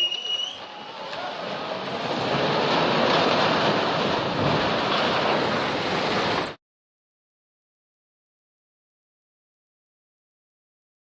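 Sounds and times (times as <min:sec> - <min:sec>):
rushing floodwater: 0:00.0 - 0:06.6.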